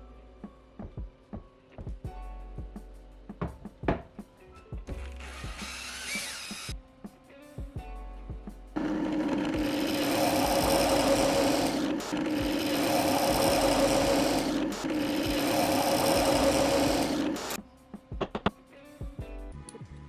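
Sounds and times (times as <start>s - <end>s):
power tool motor humming: 5.2s - 6.7s, 8.8s - 17.6s.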